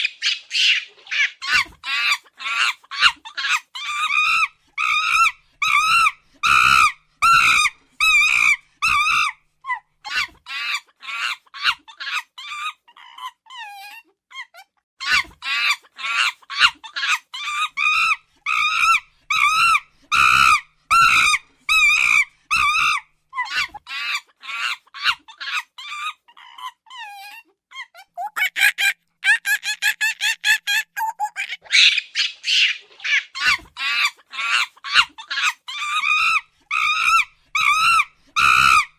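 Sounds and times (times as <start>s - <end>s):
monkey shrill calls: 0.0s - 9.4s, 15.1s - 26.1s, 28.2s - 38.9s.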